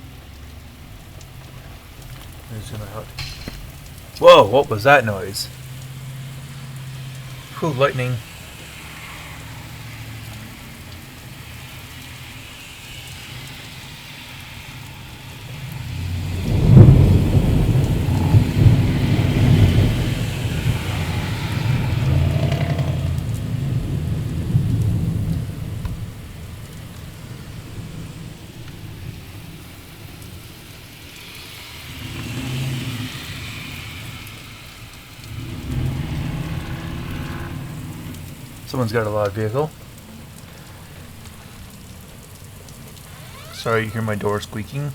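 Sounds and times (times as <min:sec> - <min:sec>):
heavy rain: 0:00.0 - 0:44.9
thunder rumbling: 0:14.6 - 0:44.5.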